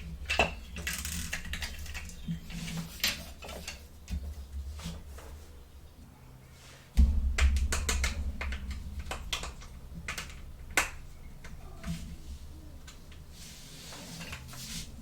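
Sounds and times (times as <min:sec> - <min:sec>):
dull bump: 0:07.0 - 0:13.3.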